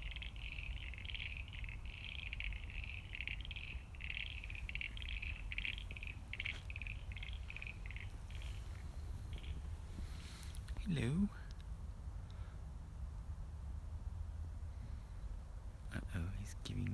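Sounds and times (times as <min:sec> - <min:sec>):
frogs trilling: 0:00.0 - 0:10.5
low steady rumble: 0:00.0 - 0:16.9.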